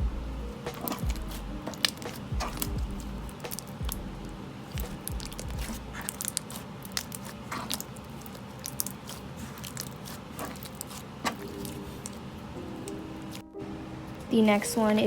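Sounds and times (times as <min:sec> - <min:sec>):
slime squished by hand: 0:00.7 - 0:12.2.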